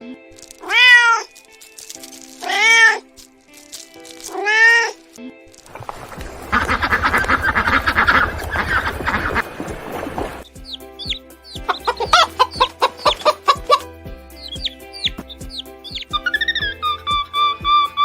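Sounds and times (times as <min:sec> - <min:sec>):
faint music: 0:00.0 - 0:18.0
cat meowing: 0:00.6 - 0:01.4, 0:02.4 - 0:03.0, 0:04.3 - 0:05.0.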